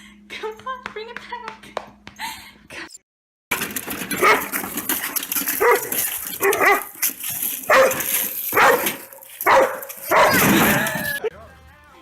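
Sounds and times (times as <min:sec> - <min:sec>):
dog barking: 0:04.2 - 0:04.5, 0:05.6 - 0:06.9, 0:07.7 - 0:10.5.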